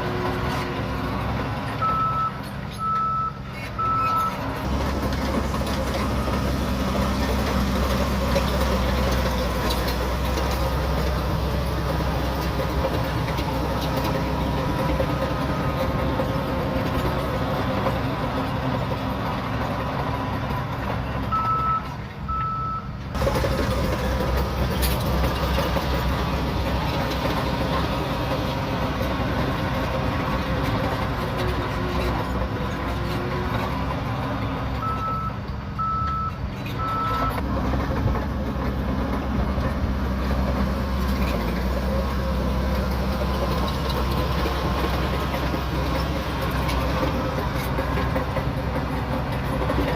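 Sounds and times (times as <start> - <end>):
bulldozer diesel engine running: 0.0 - 49.9
reversing alarm beeps: 1.8 - 4.4, 21.3 - 22.9, 34.8 - 37.4.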